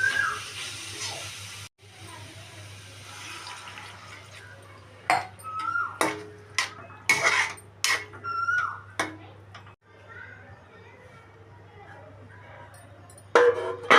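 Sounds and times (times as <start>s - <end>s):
frying hiss: 0.0s - 5.1s
spoon scraping a cooking pan: 6.0s - 8.2s.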